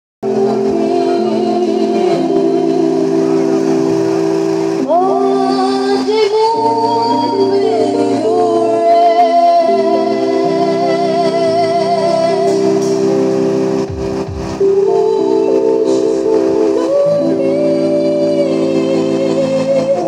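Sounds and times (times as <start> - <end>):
live music with held chords: 0.2 - 20.0.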